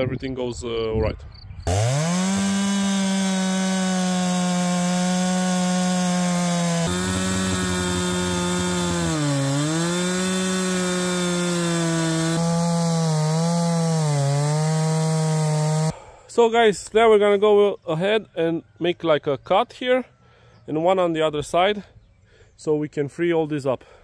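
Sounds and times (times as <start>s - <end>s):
chainsaw cutting log: 1.7s - 16.0s.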